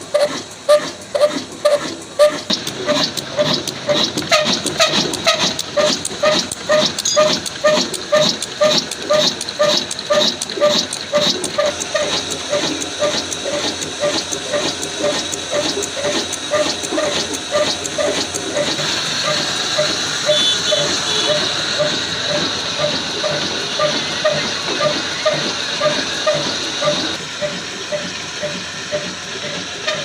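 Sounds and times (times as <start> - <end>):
diesel engine chugging: 0.0 - 30.0
sharp engine ticks: 0.0 - 30.0.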